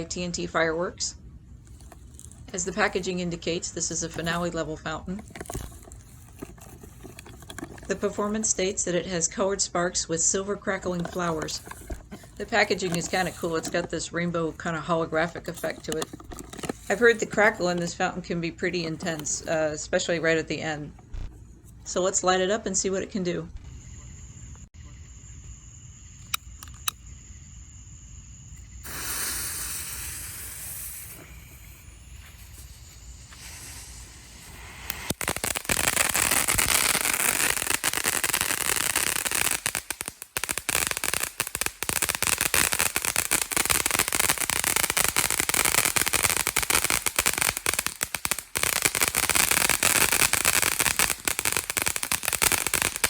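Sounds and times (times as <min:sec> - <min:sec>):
firework fountain hissing and crackling: 0:01.0 - 0:20.4, 0:28.7 - 0:53.0
sharp clicks: 0:26.2 - 0:27.0.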